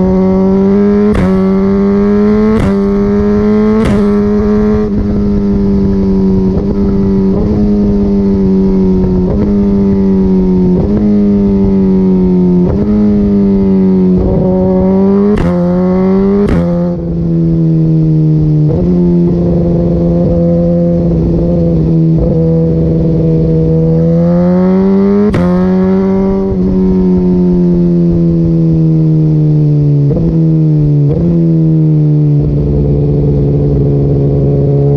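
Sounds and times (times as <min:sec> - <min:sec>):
motorcycle engine running loud: 0:00.0 - 0:34.9
sharp exhaust pops: 0:01.0 - 0:01.6, 0:02.4 - 0:05.1, 0:15.2 - 0:17.0.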